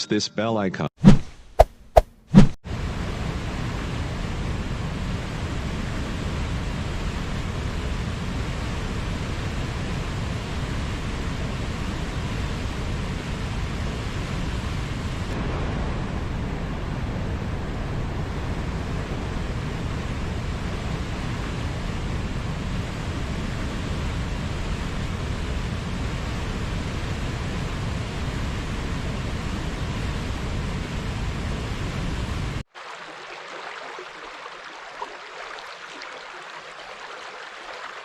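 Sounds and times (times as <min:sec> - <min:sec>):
river water flowing: 0:32.7 - 0:38.0.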